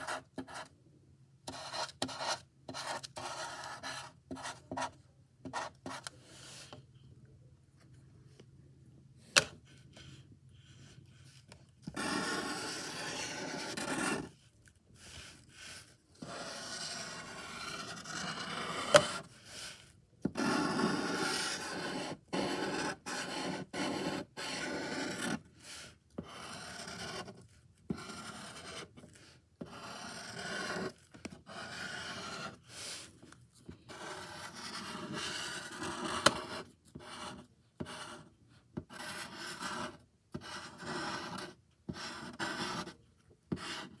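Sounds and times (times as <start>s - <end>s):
drawing tool scratching on paper: 0.0s - 0.7s, 1.5s - 6.7s, 11.9s - 14.4s, 15.0s - 19.3s, 20.3s - 25.5s, 26.2s - 29.0s, 29.6s - 33.1s, 33.8s - 44.0s.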